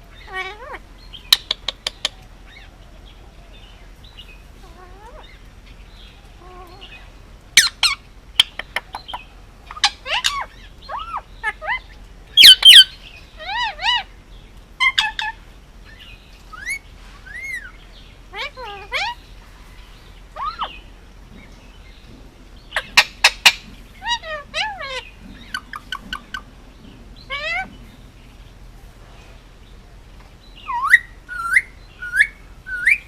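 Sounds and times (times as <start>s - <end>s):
parakeet calling and chirping: 0.0s - 28.6s, 30.4s - 33.0s
parakeet squawk: 0.2s - 0.8s, 9.7s - 14.1s, 14.8s - 15.4s, 16.6s - 19.2s, 20.4s - 20.8s, 22.8s - 26.4s, 27.3s - 27.7s.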